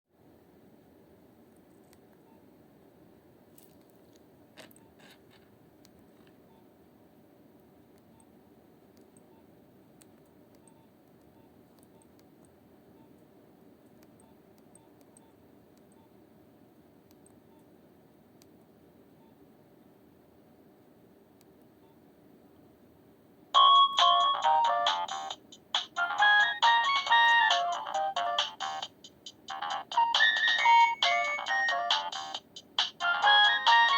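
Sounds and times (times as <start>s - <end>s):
phone ringtone melody: 23.6s - 25.4s, 26.0s - 28.9s, 29.5s - 33.9s.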